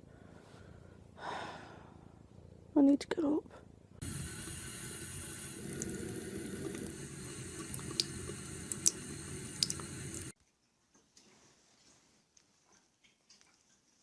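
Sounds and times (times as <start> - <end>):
running water: 4.0 - 10.4.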